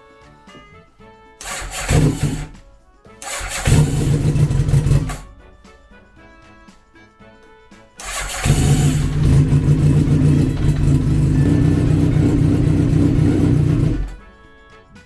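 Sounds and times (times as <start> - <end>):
motorcycle engine running: 1.4 - 2.6, 3.2 - 5.4, 8.0 - 14.2.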